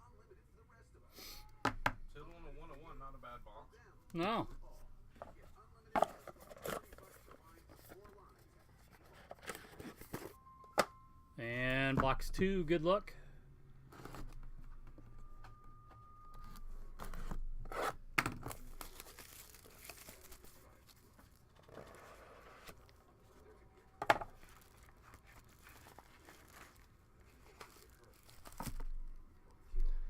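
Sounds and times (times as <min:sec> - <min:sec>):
plastic wrapping tearing: 0:17.0 - 0:21.4, 0:24.2 - 0:28.9
packaging crinkling: 0:18.4 - 0:22.0, 0:24.2 - 0:28.9.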